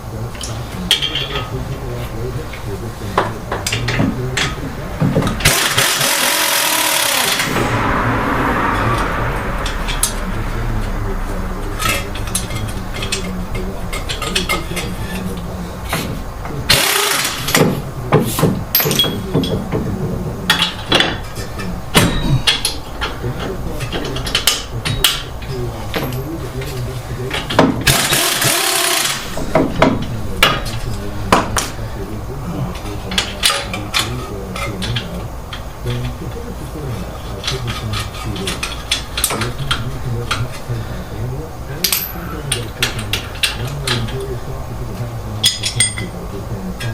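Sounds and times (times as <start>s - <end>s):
faint voices talking: 0.0s - 46.9s
metal tools clinking: 0.3s - 7.5s, 11.7s - 19.8s, 20.5s - 31.0s, 37.0s - 40.7s, 41.8s - 44.3s, 45.4s - 46.2s.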